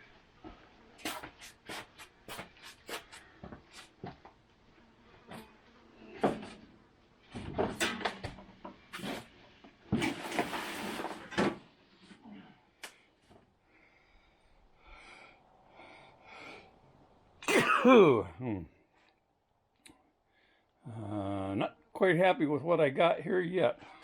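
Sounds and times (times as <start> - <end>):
parts knocking and clattering: 7.4 - 8.8.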